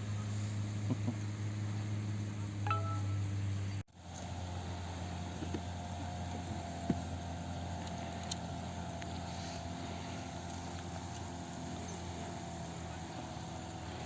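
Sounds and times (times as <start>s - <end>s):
engine droning: 0.0s - 14.0s
faint higher tone: 2.6s - 3.7s.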